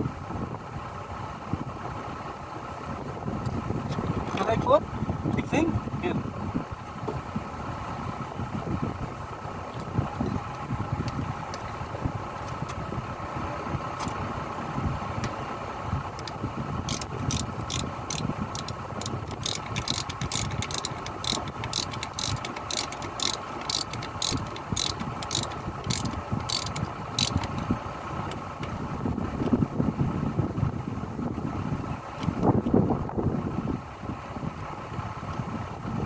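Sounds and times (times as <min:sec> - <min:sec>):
excavator engine idling: 0:06.7 - 0:29.4
sharp metallic clicks: 0:16.1 - 0:28.8.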